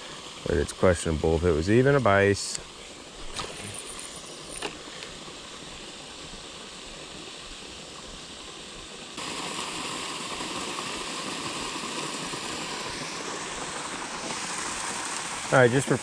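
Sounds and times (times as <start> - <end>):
waterfall rushing: 9.2 - 16.0.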